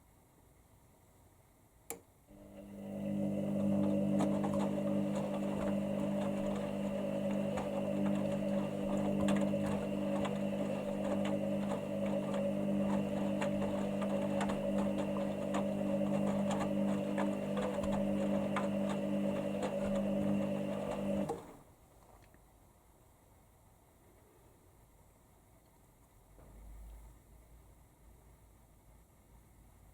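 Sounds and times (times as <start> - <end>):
washing machine humming: 2.3 - 21.7.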